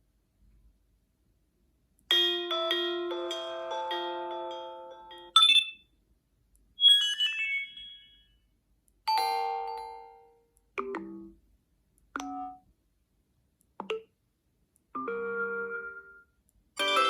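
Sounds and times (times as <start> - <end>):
phone ringtone chimes: 2.3 - 5.8, 6.8 - 8.4, 16.8 - 17.0.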